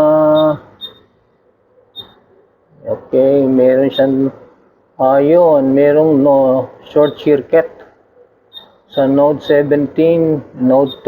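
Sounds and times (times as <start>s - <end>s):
man holding drawn-out syllable: 0.0s - 1.0s
faint high beeps: 0.0s - 2.4s, 3.7s - 4.5s, 6.8s - 7.6s, 8.5s - 9.7s, 10.5s - 11.0s.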